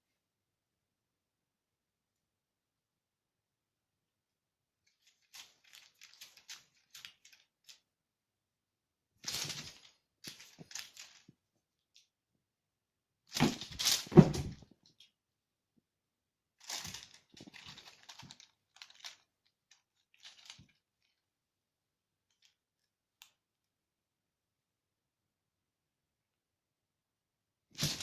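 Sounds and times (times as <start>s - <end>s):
kitten scuffling with a toy: 5.0s - 7.7s, 9.2s - 11.3s, 13.3s - 14.6s, 16.6s - 19.3s, 27.8s - 28.0s.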